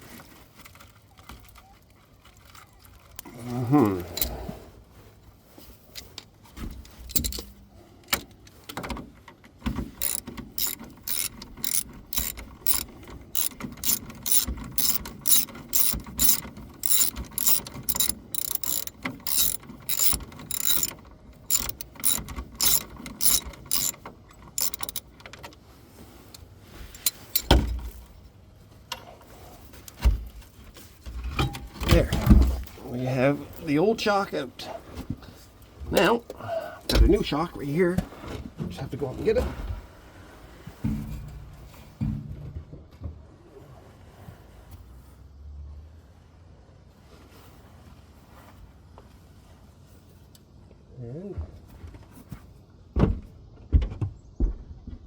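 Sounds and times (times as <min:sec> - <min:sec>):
ratchet wrench clicking: 0:07.1 - 0:07.4, 0:10.0 - 0:25.1, 0:27.0 - 0:27.6.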